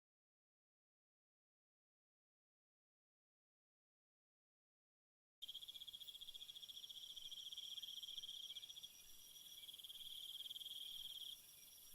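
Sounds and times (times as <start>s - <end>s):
crickets trilling: 5.4s - 11.9s.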